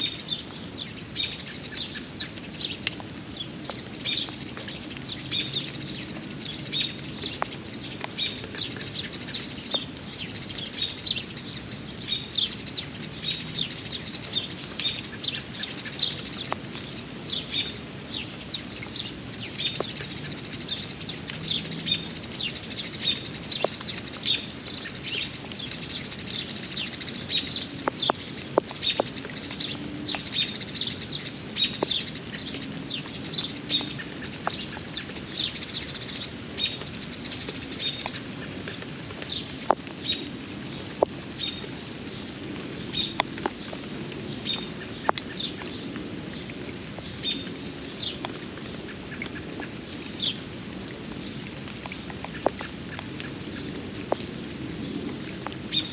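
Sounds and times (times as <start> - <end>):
drip-like ticks: 0.0 - 55.9
rain hissing: 0.0 - 55.9
songbirds chirping: 0.0 - 55.9.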